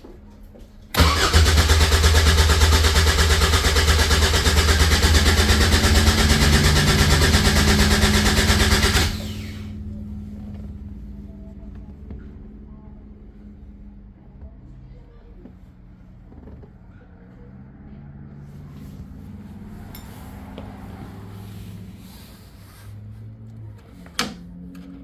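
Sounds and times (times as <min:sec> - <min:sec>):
engine cranking on starter: 0:00.9 - 0:10.7.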